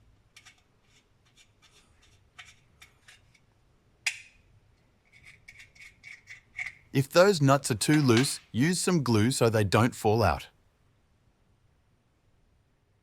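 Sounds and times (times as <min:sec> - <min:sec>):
screw and nuts clicking on plastic: 0:00.3 - 0:06.9.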